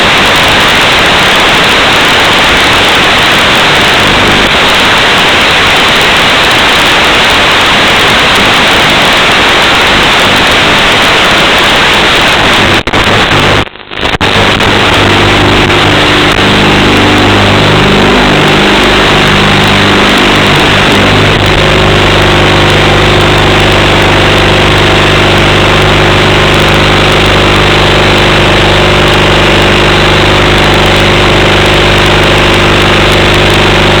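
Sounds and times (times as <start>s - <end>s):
loud static hiss: 0.0s - 34.0s
low multi-tone hum: 12.6s - 34.0s.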